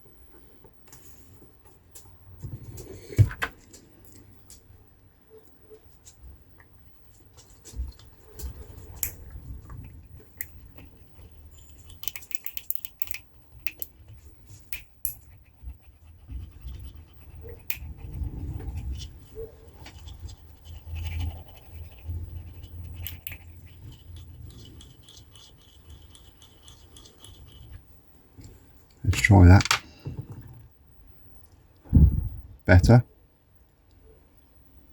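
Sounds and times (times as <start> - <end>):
hands handling small tools: 11.8 - 13.9.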